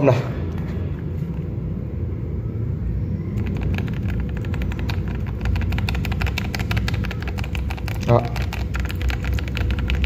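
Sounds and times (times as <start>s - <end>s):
steady low rumble: 0.0s - 10.0s
mechanical keyboard typing: 3.4s - 10.0s.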